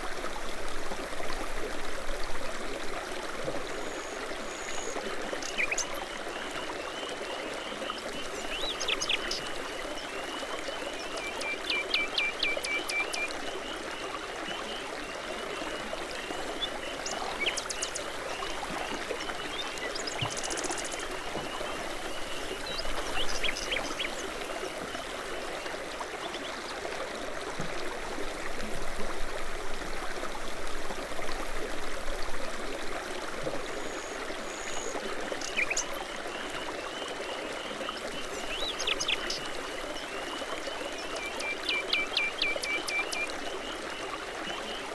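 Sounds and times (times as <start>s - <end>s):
brook babbling over stones: 0.0s - 44.9s
songbirds chirping: 5.4s - 26.6s, 34.7s - 44.8s.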